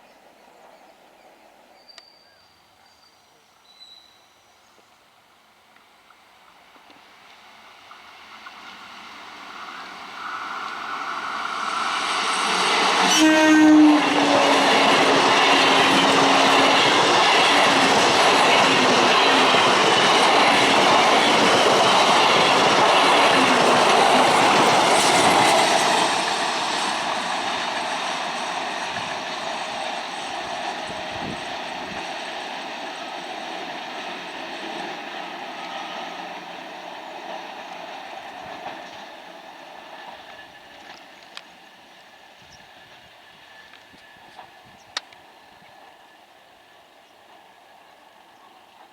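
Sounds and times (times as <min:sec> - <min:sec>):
train wheel and rail clatter: 0:05.8 - 0:48.9
train horn blast: 0:12.6 - 0:17.2.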